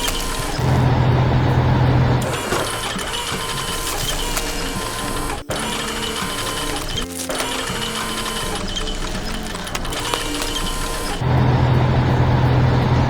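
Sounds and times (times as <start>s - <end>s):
mechanical whirring and clicking: 0.0s - 13.0s.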